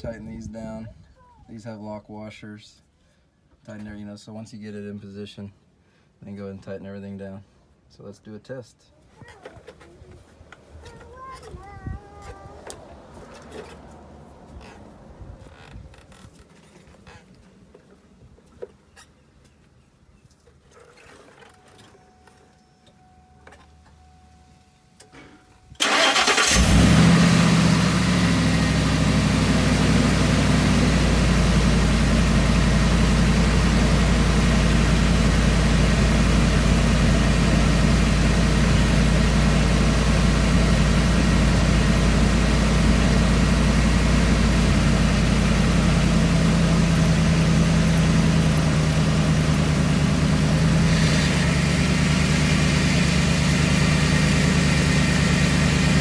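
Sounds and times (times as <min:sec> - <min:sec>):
truck engine starting and idling: 0:25.8 - 0:56.0.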